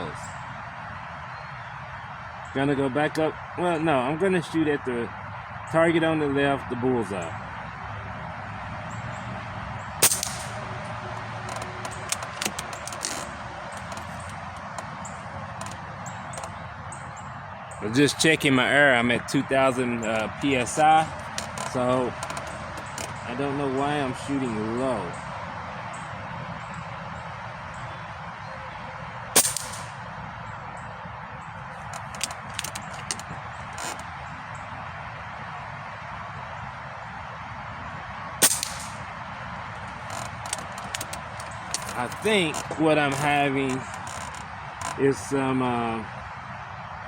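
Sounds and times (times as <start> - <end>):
air rifle shot: 10.0 - 10.6, 29.4 - 30.0, 38.4 - 39.0
metallic clicks of rifle action: 10.0 - 10.6, 11.5 - 14.6, 29.4 - 29.9, 31.8 - 34.0, 38.4 - 39.0, 39.8 - 43.2.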